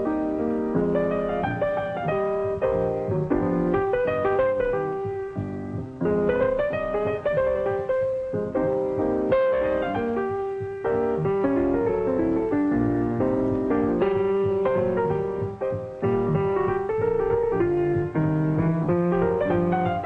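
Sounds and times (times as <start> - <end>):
piano music: 0.0 - 20.0.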